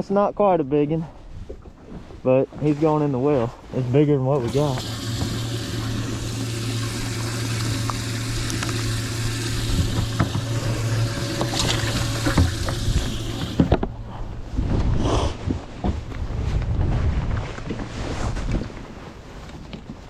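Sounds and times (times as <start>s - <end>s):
water splashing and pouring: 4.4s - 13.8s
low pump hum: 4.4s - 16.9s.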